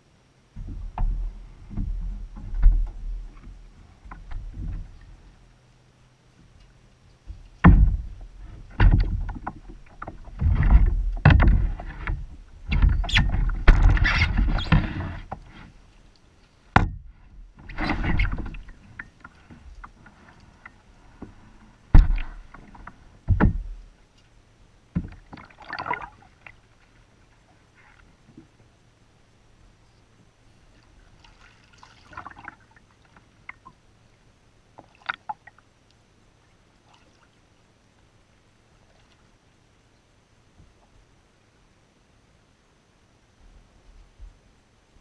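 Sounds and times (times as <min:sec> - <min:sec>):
kayak movement on water: 0:00.0 - 0:45.0
knocks on kayak hull: 0:07.6 - 0:11.8, 0:16.7 - 0:17.1, 0:21.9 - 0:23.8.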